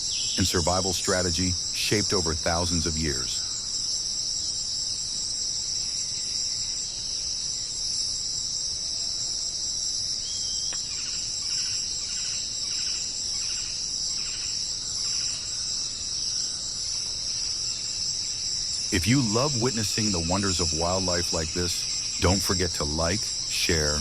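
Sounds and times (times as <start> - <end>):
high-pitched insect chorus: 0.0 - 24.0
low pulsing call: 0.4 - 3.4, 18.9 - 24.0.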